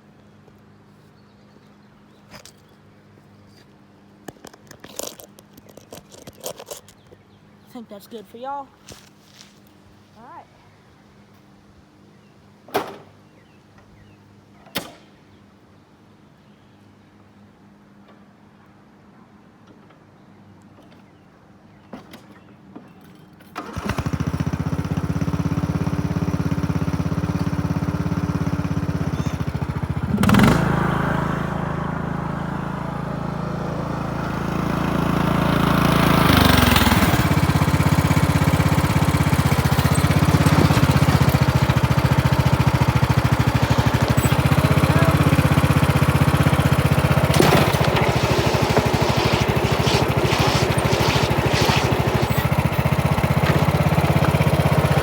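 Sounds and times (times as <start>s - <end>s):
riding lawnmower engine: 0.0s - 10.4s, 17.6s - 55.0s.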